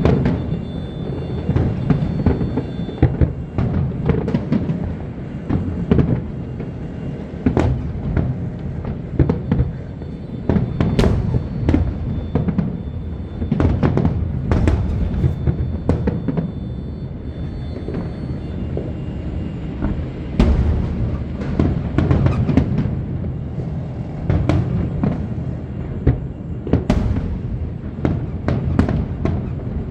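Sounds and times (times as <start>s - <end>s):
fireworks bursting: 0.0s - 29.9s
low rumble: 14.1s - 15.8s.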